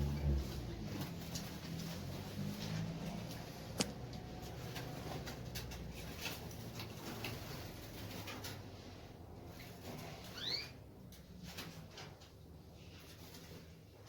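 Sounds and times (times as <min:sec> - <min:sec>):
birds chipping and calling: 0:09.5 - 0:10.8.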